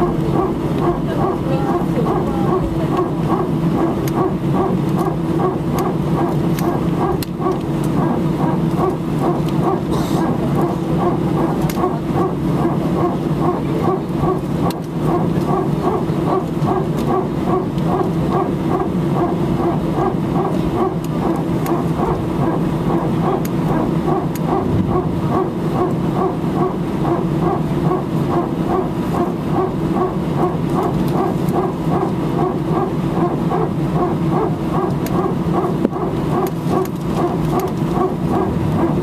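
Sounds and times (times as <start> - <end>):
aircraft cabin hum: 0.0 - 39.0
hydraulic pump barking pulses: 0.0 - 39.0.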